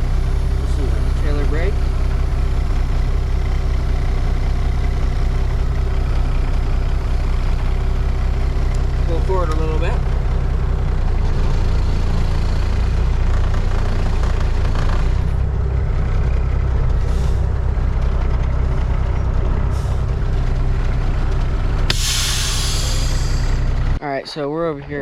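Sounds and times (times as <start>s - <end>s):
truck engine running: 0.0s - 24.0s
air brakes hissing: 17.0s - 17.6s, 21.9s - 23.8s.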